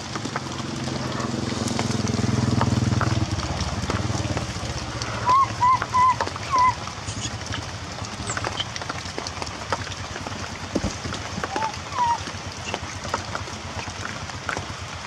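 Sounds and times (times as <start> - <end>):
rain pattering: 0.0 - 15.0
baby monkey calling: 5.2 - 7.4, 11.5 - 12.8.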